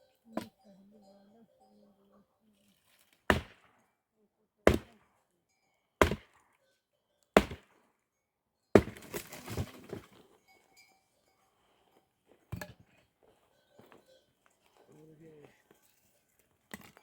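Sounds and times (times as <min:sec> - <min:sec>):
axe chopping firewood: 0:03.0 - 0:03.8, 0:04.6 - 0:05.2, 0:06.0 - 0:06.4, 0:07.4 - 0:07.9, 0:08.8 - 0:10.2, 0:12.5 - 0:12.9, 0:16.7 - 0:17.0
wood splitting and pieces falling: 0:03.0 - 0:03.8, 0:04.7 - 0:04.9, 0:06.0 - 0:06.4, 0:07.4 - 0:07.8, 0:08.8 - 0:10.2.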